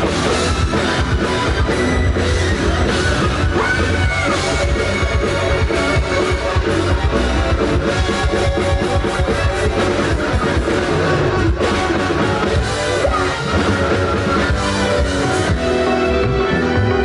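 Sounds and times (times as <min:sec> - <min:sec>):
rock band playing: 0:00.0 - 0:17.0.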